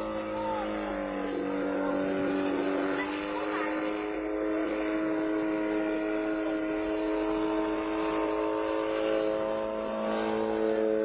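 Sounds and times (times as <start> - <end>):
helicopter engine hum: 0.0 - 11.0.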